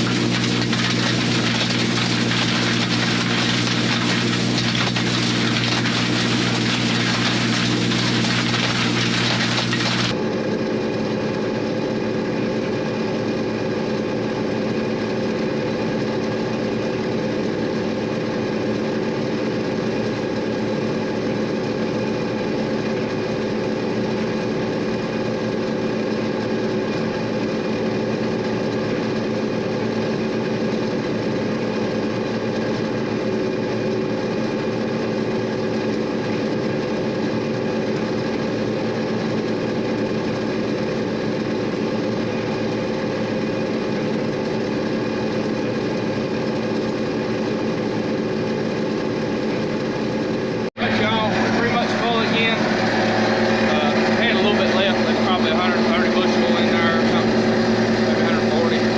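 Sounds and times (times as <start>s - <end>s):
combine harvester droning: 0.0s - 10.2s, 50.8s - 58.9s.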